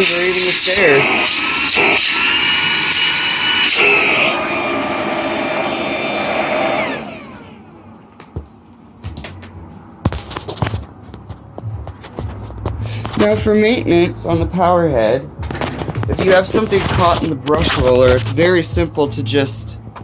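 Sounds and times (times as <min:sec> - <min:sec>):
stick vacuum motor whine: 0:00.0 - 0:08.4.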